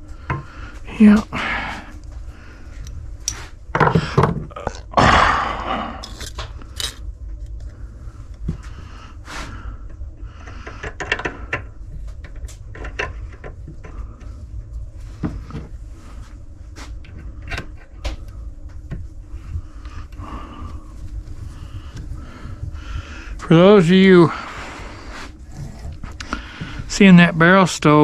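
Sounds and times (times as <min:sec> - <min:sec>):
steady low rumble: 0:00.0 - 0:28.0
objects clicking and clattering: 0:06.0 - 0:07.1.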